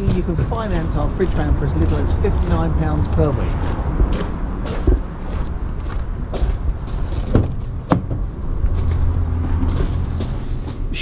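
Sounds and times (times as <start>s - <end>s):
steady low rumble: 0.0s - 11.0s
van door clicks and knocks: 7.3s - 8.2s.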